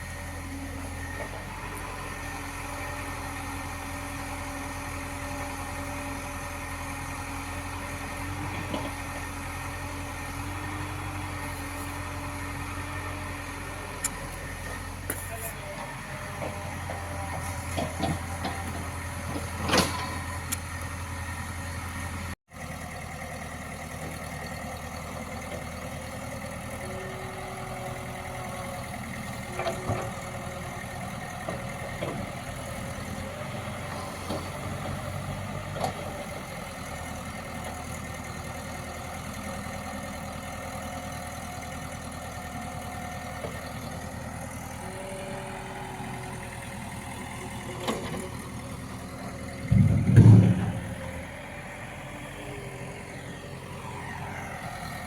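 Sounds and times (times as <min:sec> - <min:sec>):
diesel engine running: 0:00.0 - 0:55.0
sharp metal knocks and clanks: 0:49.7 - 0:50.9.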